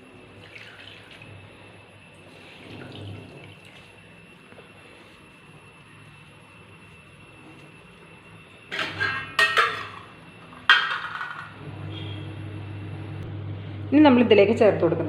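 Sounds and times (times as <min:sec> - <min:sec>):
dishes and utensils clattering: 0:08.7 - 0:11.6.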